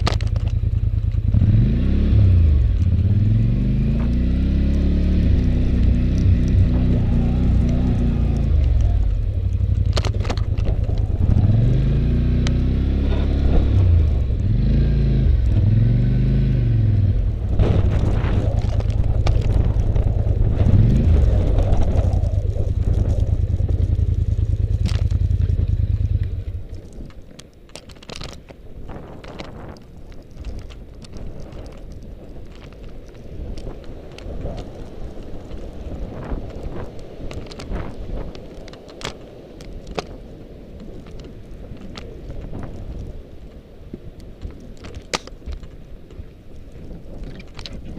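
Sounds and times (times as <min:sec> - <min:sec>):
scattered clicks: 0:00.0 - 0:01.5, 0:02.6 - 0:14.6, 0:17.2 - 0:40.2
atv engine revving: 0:00.4 - 0:26.8.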